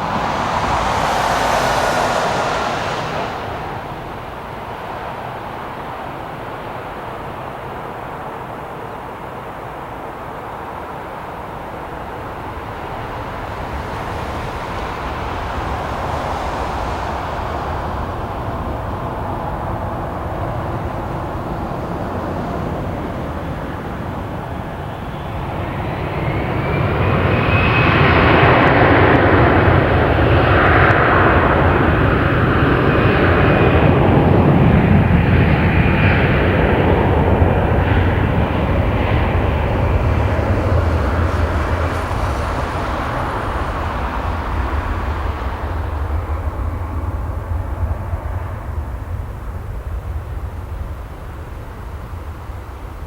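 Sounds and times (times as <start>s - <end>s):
high engine whine: 0.0s - 5.8s, 24.4s - 53.0s
jet engines rushing drone: 0.0s - 53.0s.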